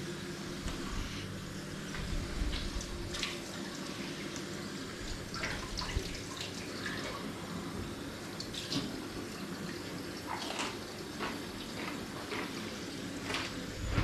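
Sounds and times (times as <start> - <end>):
low hum: 13.6 - 14.0.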